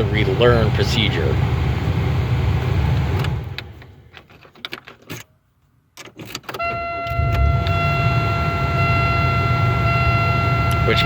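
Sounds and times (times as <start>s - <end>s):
car engine shutting off: 6.6s - 10.9s
electronic chime: 6.6s - 11.0s.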